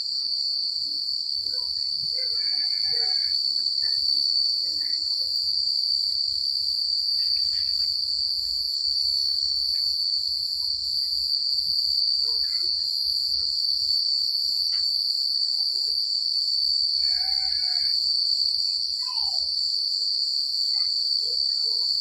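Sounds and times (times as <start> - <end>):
crickets chirping: 0.0 - 22.0
faint animal call: 2.1 - 3.4, 17.0 - 18.0.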